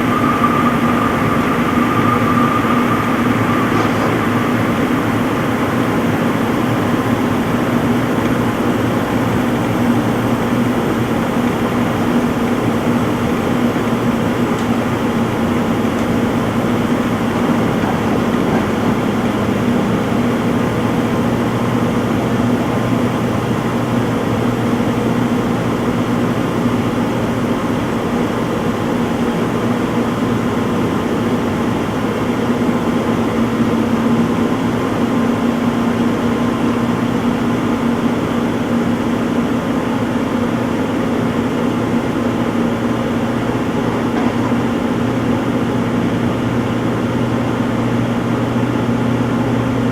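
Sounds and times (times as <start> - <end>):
washing machine drum spinning: 0.0 - 9.8, 13.8 - 23.3.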